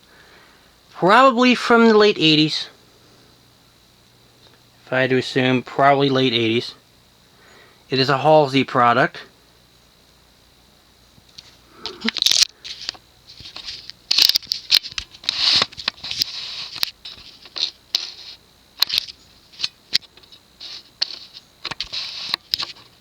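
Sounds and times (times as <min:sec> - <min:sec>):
rustling and scratching: 0:11.3 - 0:23.0.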